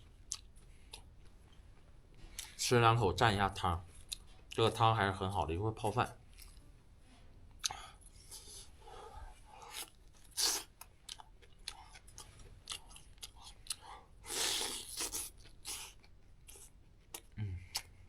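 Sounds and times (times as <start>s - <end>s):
person chewing food: 0.0s - 2.6s, 7.6s - 18.0s.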